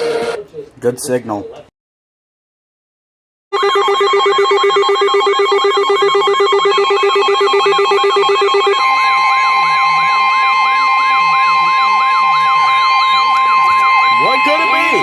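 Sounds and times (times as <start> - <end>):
pulsing low beep: 3.6 - 15.0
steady high alert tone: 3.6 - 15.0
warbling siren-like tone: 3.6 - 15.0.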